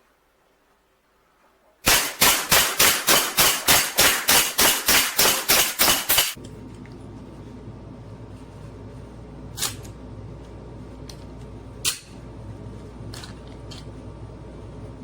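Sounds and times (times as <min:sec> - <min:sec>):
bb pistol shots: 0:01.8 - 0:06.4
steady low hum: 0:01.8 - 0:15.0.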